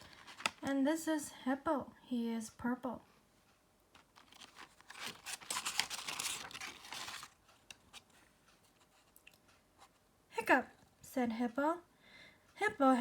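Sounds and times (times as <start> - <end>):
paper pages rustling: 0.0 - 0.7, 4.0 - 9.2.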